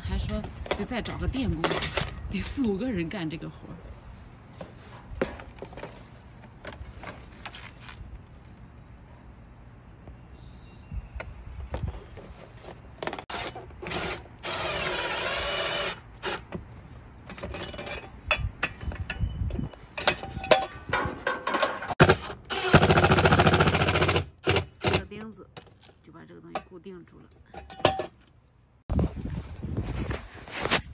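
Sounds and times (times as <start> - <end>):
tools clicking and rattling: 17.2 - 19.3, 19.9 - 26.8, 27.4 - 28.4.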